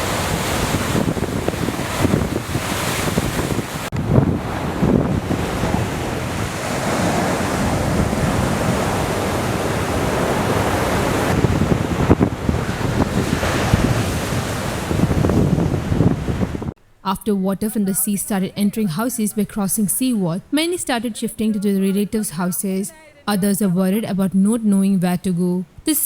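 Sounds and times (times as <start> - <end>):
sea waves breaking on shore: 0.0 - 16.8.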